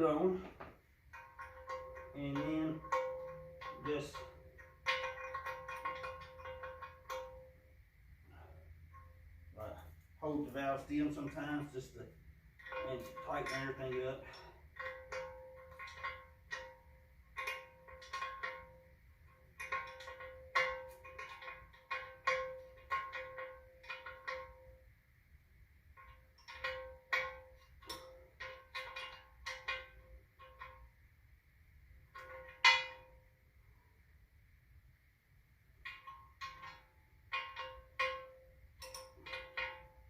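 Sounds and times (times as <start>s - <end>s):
metal wrench clinking on wheel: 1.1s - 7.6s, 12.6s - 24.8s, 26.0s - 30.9s, 35.8s - 40.0s.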